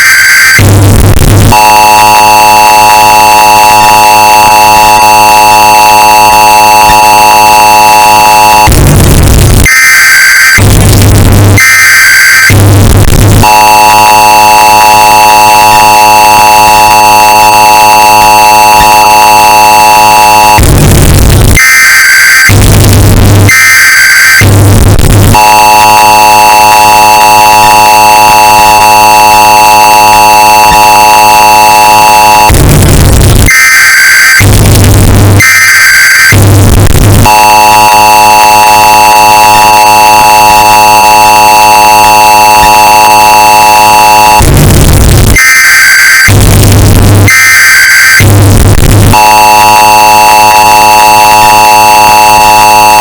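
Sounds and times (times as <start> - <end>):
harsh distorted data bursts: 0.0 - 53.0
two-tone alert signal: 0.6 - 8.8, 11.6 - 21.2, 25.3 - 32.6, 37.2 - 44.5, 49.1 - 53.0.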